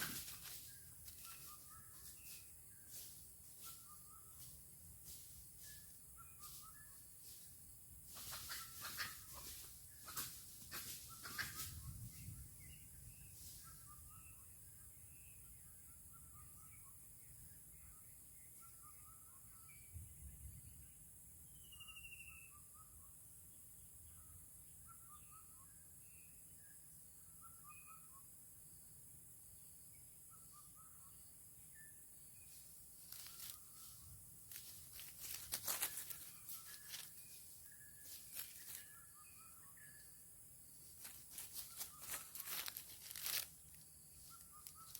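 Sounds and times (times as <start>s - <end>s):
wing flapping and rustling: 0.0s - 3.2s, 8.1s - 11.8s, 33.0s - 38.9s, 40.8s - 44.9s
small birds chirping: 0.0s - 44.9s.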